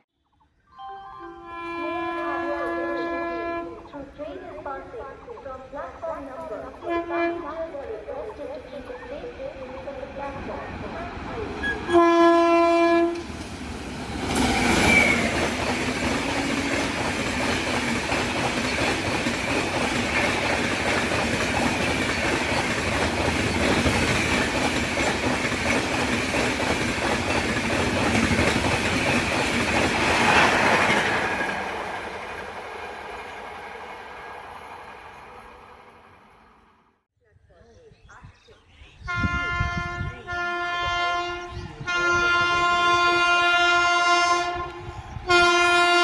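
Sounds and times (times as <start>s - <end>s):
locomotive horn blast: 1.2s - 4.0s, 6.8s - 7.6s, 11.6s - 13.3s, 39.1s - 46.0s
train wheels rushing on track: 6.2s - 36.4s.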